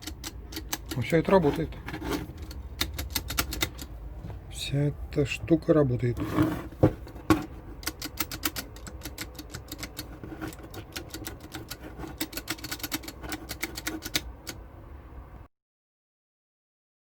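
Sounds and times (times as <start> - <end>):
mechanical keyboard typing: 0.0 - 1.4, 2.3 - 4.0, 7.2 - 14.6.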